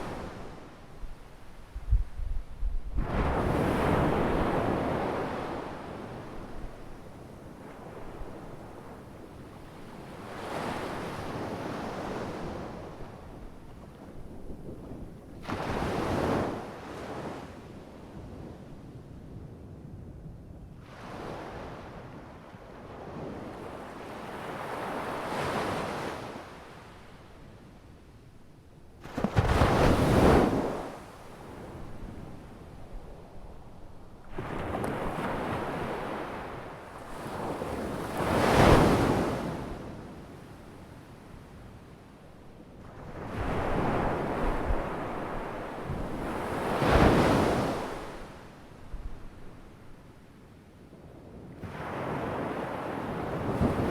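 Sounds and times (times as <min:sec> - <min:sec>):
ocean waves washing ashore: 0:03.0 - 0:18.2, 0:29.0 - 0:41.3, 0:42.8 - 0:50.4, 0:51.5 - 0:53.9.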